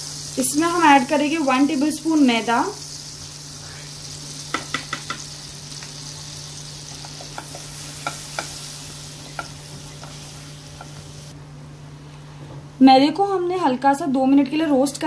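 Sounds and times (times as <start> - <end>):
flour sizzling in butter: 0.0 - 11.4.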